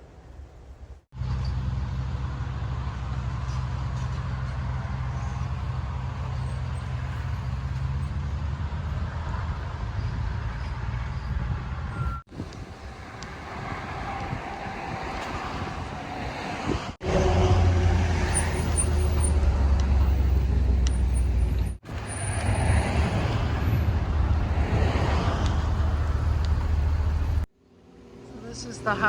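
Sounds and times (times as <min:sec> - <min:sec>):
road traffic rumble: 0:00.0 - 0:29.0
wind buffeting microphone: 0:08.6 - 0:18.3, 0:19.0 - 0:27.4.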